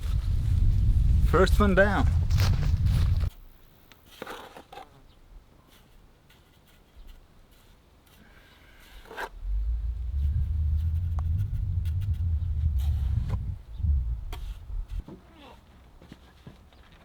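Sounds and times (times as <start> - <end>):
scraping and tapping bricks and mortar: 4.0 - 5.0
loud low rumble: 9.3 - 15.0.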